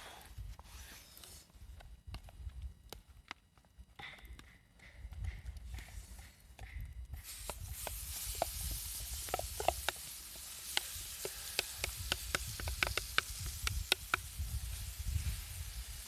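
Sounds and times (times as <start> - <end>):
food sizzling on a griddle: 7.2 - 16.0
spattering fat crackling: 7.2 - 16.0.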